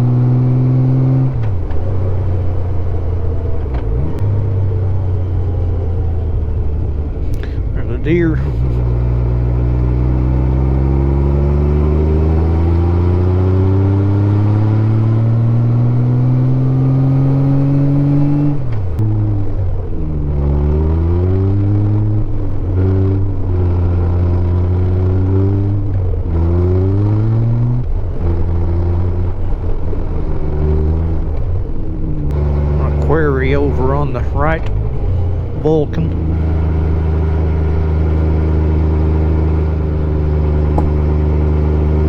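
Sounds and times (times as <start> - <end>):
motorcycle engine running: 31.1 - 42.0.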